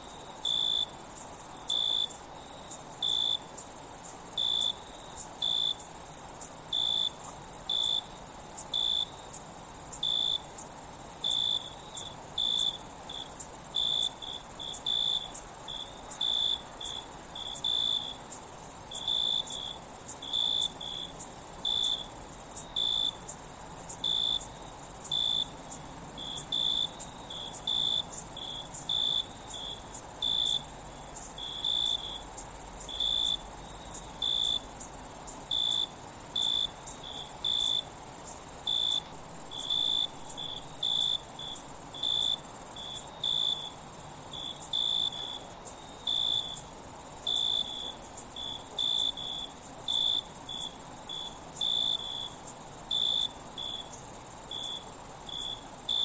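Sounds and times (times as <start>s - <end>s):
crickets trilling: 0.0s - 56.0s.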